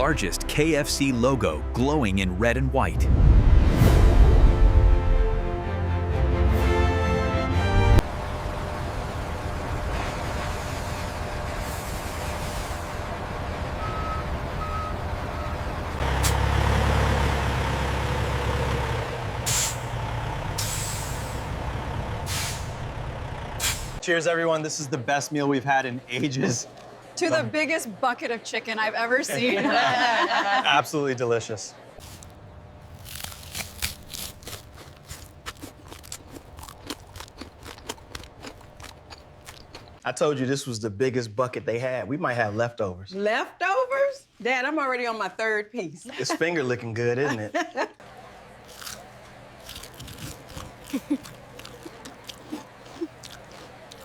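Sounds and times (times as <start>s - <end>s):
truck engine rumble: 7.8s - 24.0s, 31.8s - 40.0s, 48.0s - 54.0s
air release hisses: 22.3s - 22.8s, 23.6s - 24.0s
crispy fried chicken crunching: 32.0s - 40.0s, 48.6s - 54.0s.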